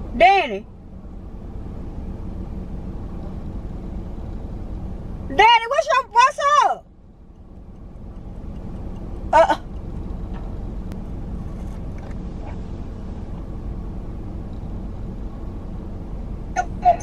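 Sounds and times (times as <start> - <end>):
low machinery rumble: 0.0 - 17.0
voice: 0.1 - 0.6, 5.3 - 6.8, 9.4 - 9.6, 16.6 - 17.0.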